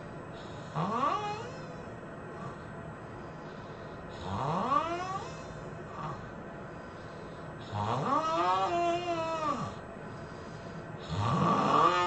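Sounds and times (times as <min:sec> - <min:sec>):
loud pitched snoring: 0:00.6 - 0:01.6, 0:04.2 - 0:05.4, 0:07.7 - 0:09.8, 0:11.0 - 0:12.0.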